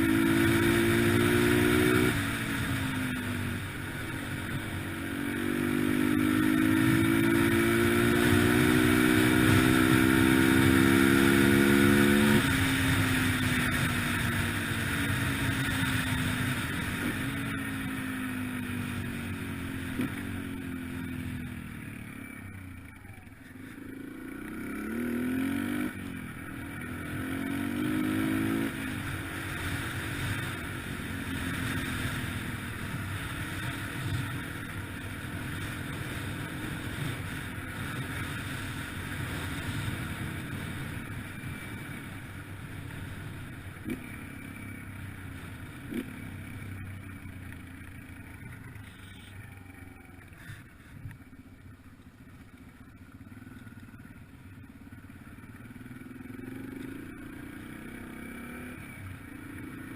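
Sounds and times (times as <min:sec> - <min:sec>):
dirt bike engine revving: 0:00.0 - 0:02.9, 0:03.7 - 0:17.9, 0:23.7 - 0:41.9, 0:45.4 - 0:46.6.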